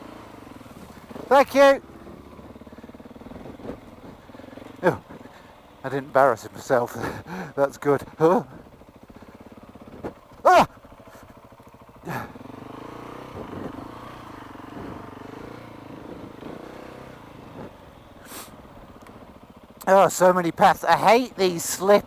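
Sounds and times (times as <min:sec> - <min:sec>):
motorcycle engine at low revs: 0:00.0 - 0:22.0
short cry: 0:10.4 - 0:10.8.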